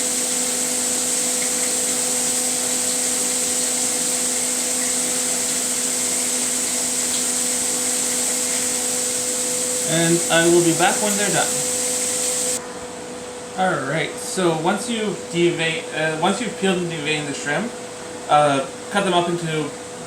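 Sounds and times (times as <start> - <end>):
bacon sizzling in a frying pan: 0.0 - 12.6.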